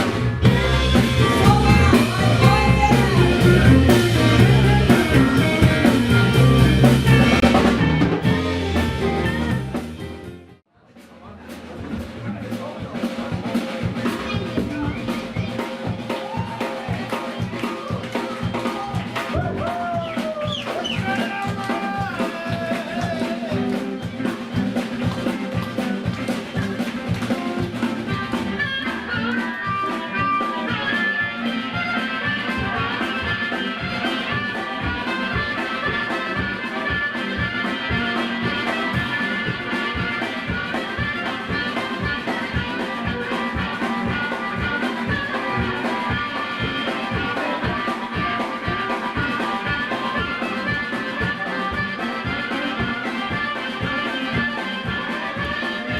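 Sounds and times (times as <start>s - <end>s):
music with fast drum beat: 0.0s - 55.9s.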